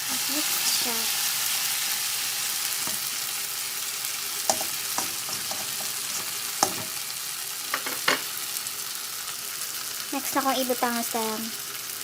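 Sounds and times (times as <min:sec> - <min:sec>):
fish sizzling in a pan: 0:00.0 - 0:12.0
spatula knocking and scraping pan: 0:02.8 - 0:03.2, 0:04.4 - 0:07.1, 0:07.7 - 0:08.3.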